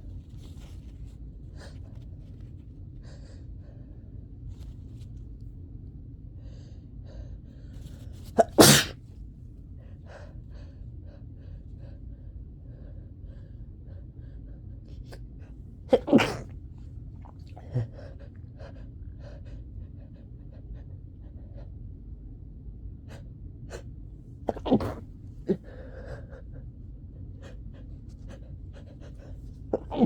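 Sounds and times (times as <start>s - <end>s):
person sneezing: 8.3s - 9.0s, 15.9s - 16.5s, 24.5s - 25.6s.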